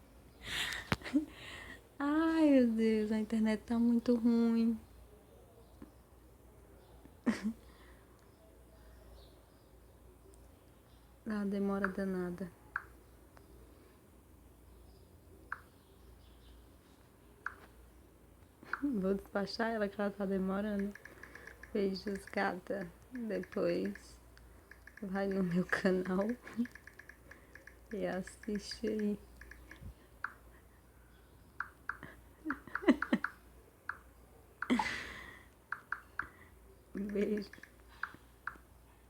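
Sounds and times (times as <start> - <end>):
faint low hum: 0.0 - 39.0
keyboard typing clicks: 20.7 - 30.4, 31.6 - 34.8, 35.7 - 36.4, 37.0 - 38.6.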